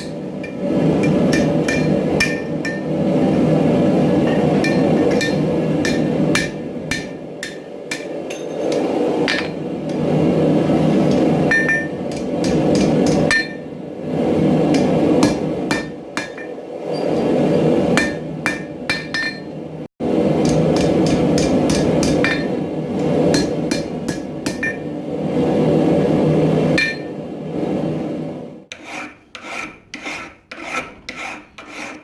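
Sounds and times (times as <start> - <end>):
hammer striking steel on anvil: 0.0 - 3.0, 4.2 - 9.6, 10.9 - 13.7, 14.7 - 16.6, 18.0 - 19.5, 20.4 - 22.6, 23.3 - 24.8, 26.8 - 27.1
steady rushing noise: 0.0 - 28.7.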